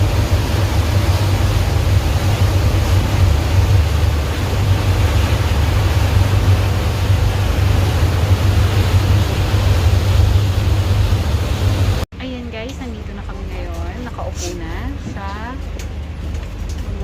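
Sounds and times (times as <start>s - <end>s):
even rushing noise: 0.0s - 12.0s
ferry engine humming: 0.0s - 17.0s.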